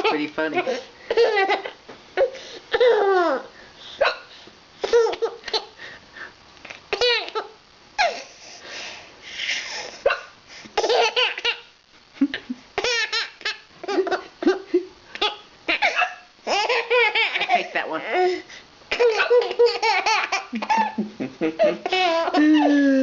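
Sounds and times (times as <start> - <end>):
baby laughing: 0.0 - 1.8, 7.0 - 8.2, 10.8 - 11.7, 12.8 - 14.6, 15.2 - 17.6, 18.9 - 22.8.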